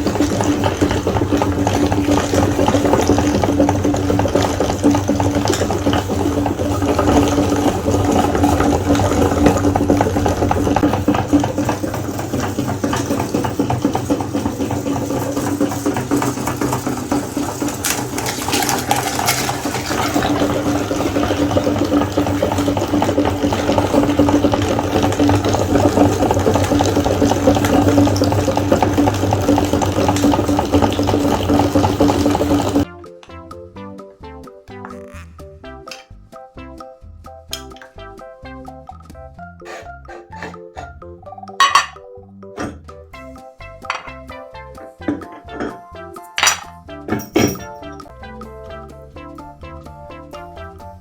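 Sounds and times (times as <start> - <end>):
electric meat grinder running: 0.0 - 32.9.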